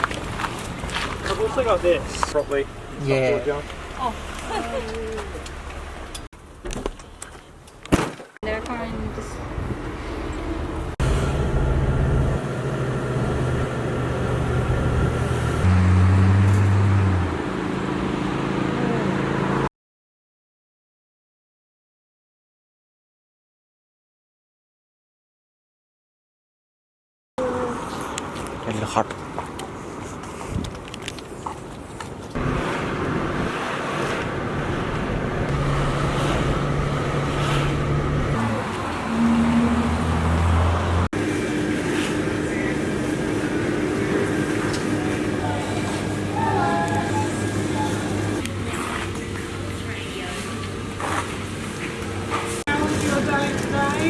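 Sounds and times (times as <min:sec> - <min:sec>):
vehicle engine humming: 0:00.0 - 0:07.8, 0:08.4 - 0:19.7, 0:27.4 - 0:54.0.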